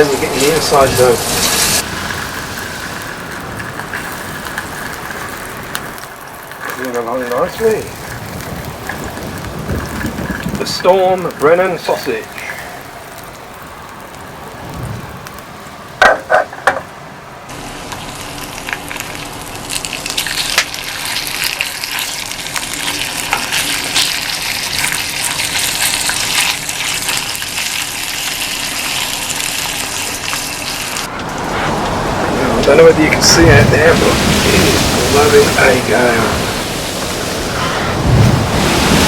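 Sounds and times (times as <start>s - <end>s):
sharp knocks: 16.0s - 16.9s
sausage sizzling in a pan: 17.6s - 31.1s.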